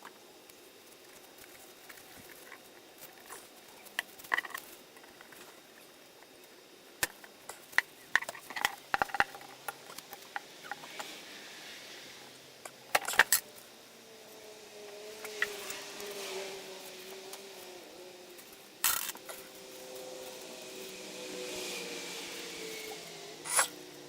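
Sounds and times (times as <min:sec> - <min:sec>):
metallic clicks of small parts: 0:12.6 - 0:13.5, 0:18.8 - 0:19.4.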